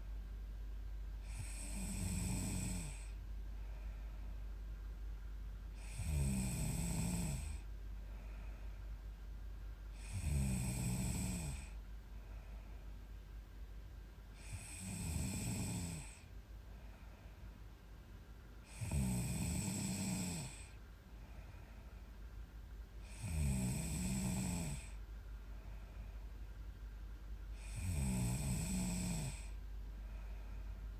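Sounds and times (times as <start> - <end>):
quiet breathing: 0.0 - 30.9
woman snoring loudly: 1.2 - 3.2, 5.8 - 7.6, 10.0 - 11.8, 14.4 - 16.2, 18.6 - 20.8, 23.0 - 25.0, 27.6 - 29.6.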